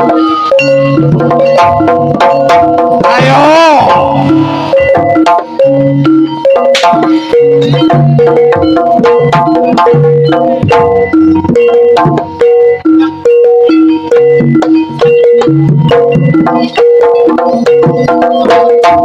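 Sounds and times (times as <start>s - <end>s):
ringing gong-chime notes: 0.1s - 3.0s
drums struck quickly: 1.0s - 19.0s.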